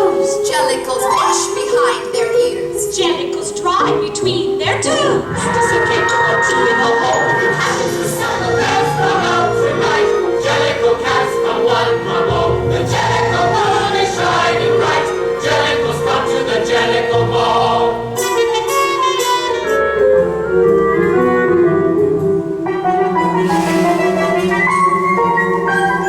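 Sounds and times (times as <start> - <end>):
chorus singing show music: 0.0 - 19.7, 23.3 - 26.0
instrumental accompaniment: 1.8 - 26.0
sustained held note: 5.0 - 9.2, 23.4 - 24.6.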